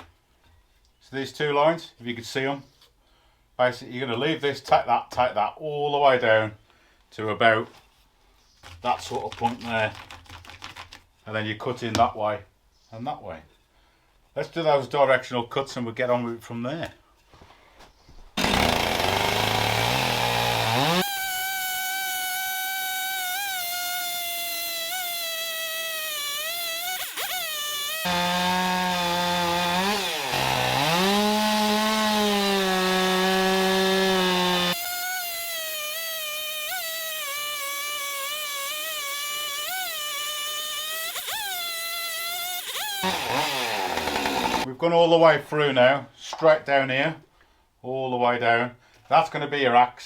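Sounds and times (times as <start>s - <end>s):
chainsaw cutting log: 18.4s - 44.7s.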